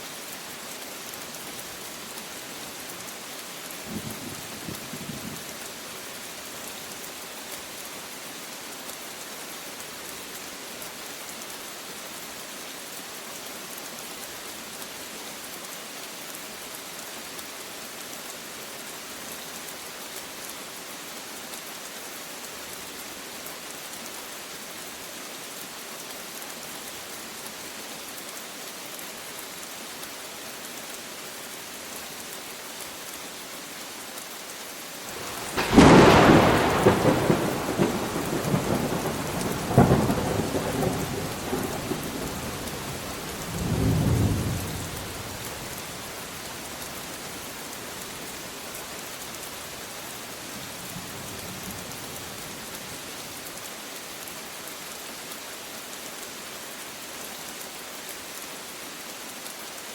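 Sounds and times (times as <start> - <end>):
steady rain falling: 0.0 - 59.9
rumbling thunderclap: 35.2 - 42.2.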